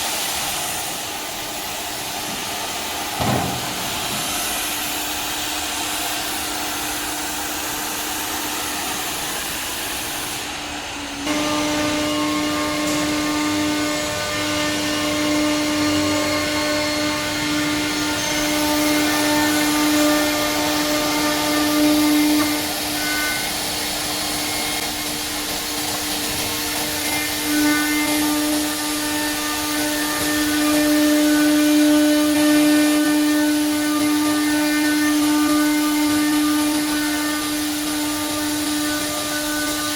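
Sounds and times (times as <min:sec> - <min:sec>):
router rushing hiss: 0:00.0 - 0:39.9
router spindle whine: 0:05.1 - 0:25.6.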